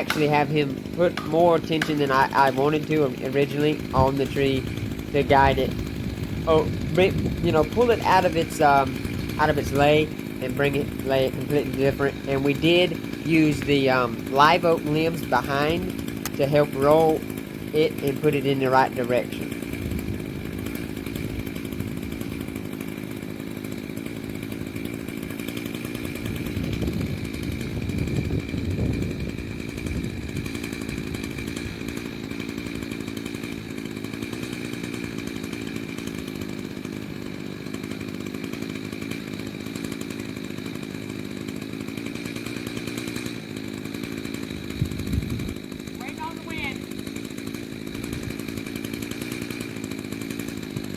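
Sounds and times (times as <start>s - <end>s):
chainsaw cutting into tree: 0.0s - 50.9s.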